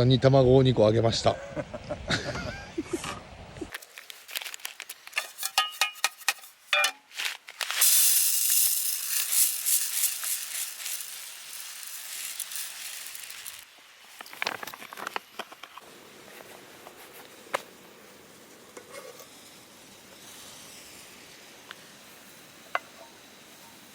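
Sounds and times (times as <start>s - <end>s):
food sizzling in a pan: 7.6s - 14.7s, 15.8s - 23.9s.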